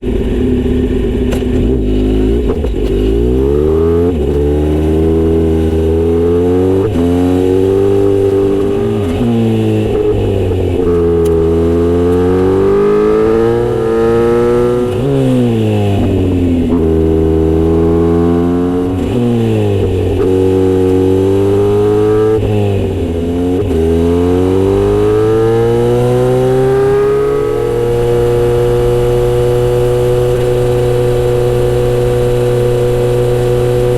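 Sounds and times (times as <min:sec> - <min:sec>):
motorcycle engine revving: 0:00.0 - 0:33.9.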